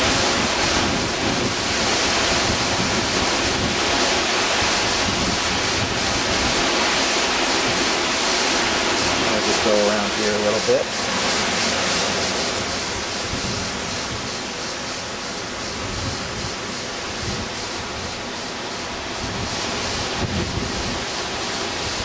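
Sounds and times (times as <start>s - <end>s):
wind buffeting microphone: 0.0s - 7.0s, 11.1s - 14.7s, 15.4s - 18.4s, 19.0s - 22.0s
hurricane wind and rain: 0.0s - 22.0s.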